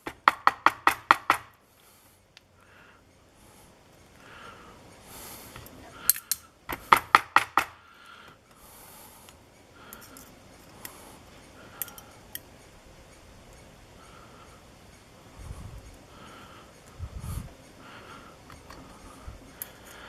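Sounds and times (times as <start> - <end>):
metal lock parts clicking: 6.0 - 6.8.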